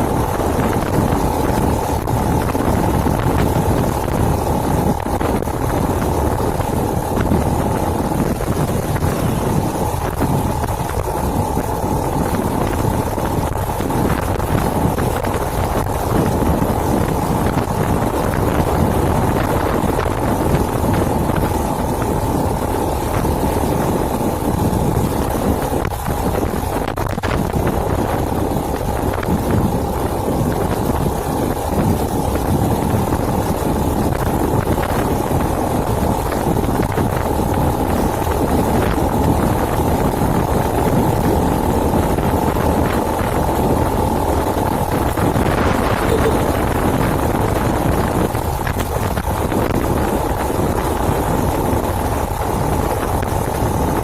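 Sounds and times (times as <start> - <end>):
motorcycle riding with wind noise: 0.0 - 54.0.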